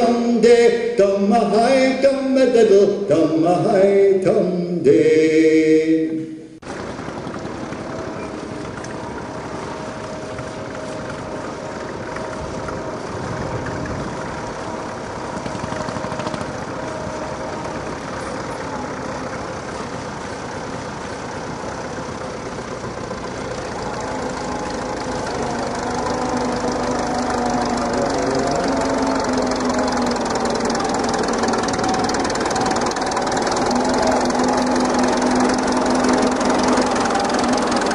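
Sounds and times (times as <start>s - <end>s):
tractor engine running: 0.0s - 5.7s, 6.6s - 37.9s.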